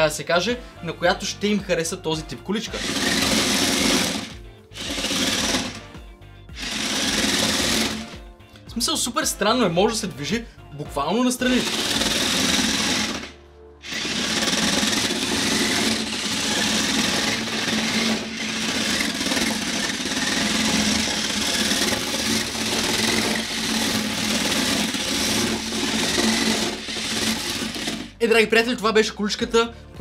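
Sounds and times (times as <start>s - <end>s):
toy car motors whirring: 2.8s - 5.8s, 6.6s - 8.1s, 11.6s - 28.2s.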